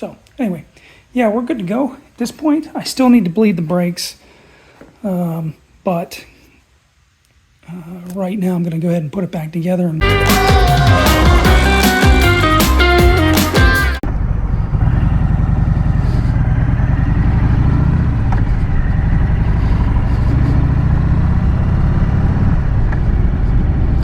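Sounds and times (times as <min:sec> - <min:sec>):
motorcycle engine idling rumble: 0:14.0 - 0:24.0.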